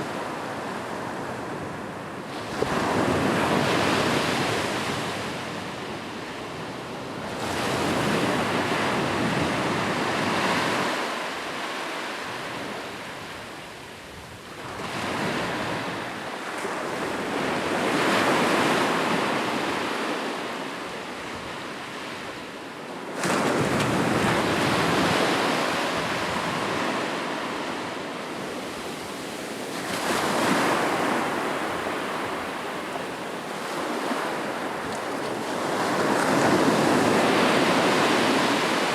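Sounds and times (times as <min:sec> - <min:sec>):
ocean surf breaking on shore: 0:23.2 - 0:38.9.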